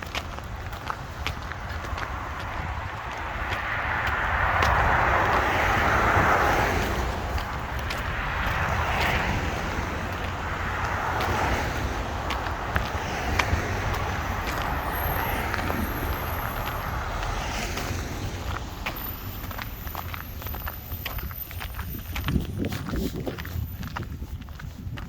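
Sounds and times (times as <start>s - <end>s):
footsteps crunching in snow: 0.0s - 25.0s
car tyres hissing on slush: 2.1s - 20.1s.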